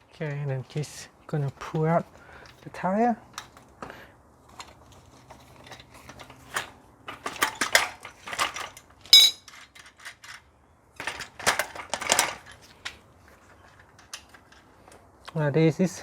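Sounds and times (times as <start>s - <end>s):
sharp ringing metal clink: 9.2s - 9.4s.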